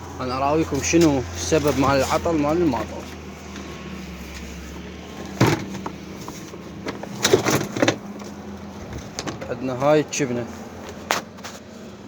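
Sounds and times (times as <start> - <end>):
knocks and clatter of machine parts: 5.2 - 9.6.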